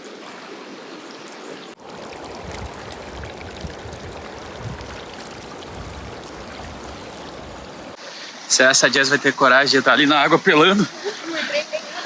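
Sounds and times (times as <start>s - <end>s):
river rushing: 1.8s - 8.0s.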